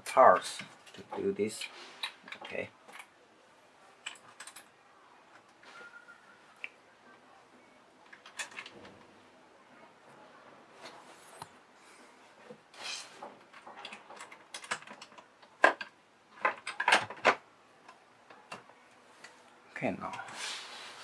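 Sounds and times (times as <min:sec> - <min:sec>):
lock parts clicking and knocking: 0:04.0 - 0:05.5, 0:08.0 - 0:09.0, 0:13.2 - 0:18.8
brief scrape: 0:20.3 - 0:21.0.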